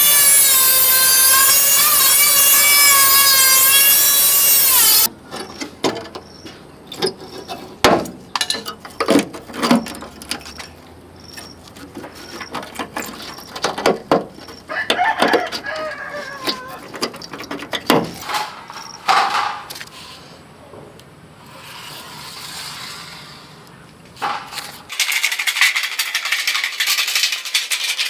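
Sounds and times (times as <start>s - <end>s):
drawn-out pitched call: 14.7s - 16.8s.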